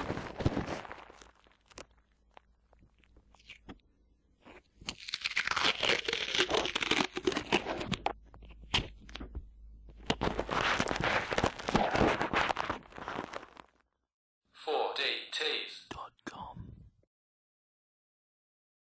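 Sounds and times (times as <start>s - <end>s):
sticky tape ripping: 4.8s - 8.1s, 10.1s - 13.7s.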